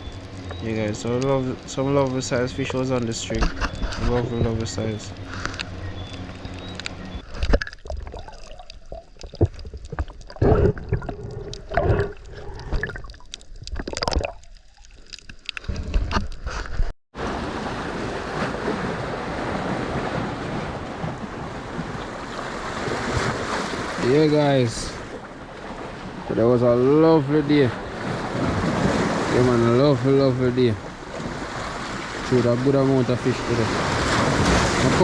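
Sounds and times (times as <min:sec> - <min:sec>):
waves: 0:00.0 - 0:07.4, 0:17.2 - 0:35.0
water splashing and sloshing: 0:00.0 - 0:35.0
wind: 0:00.0 - 0:35.0.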